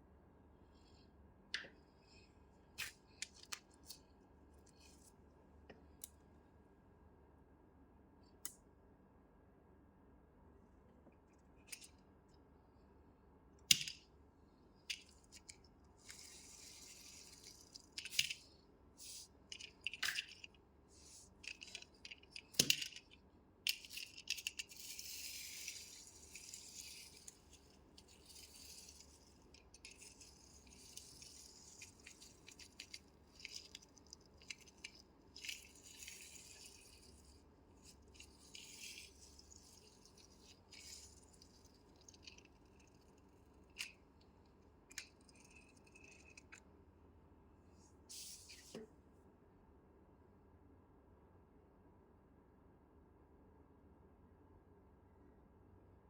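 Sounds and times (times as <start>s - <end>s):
plastic toys clicking and tapping: 13.7s - 14.0s, 14.9s - 44.1s.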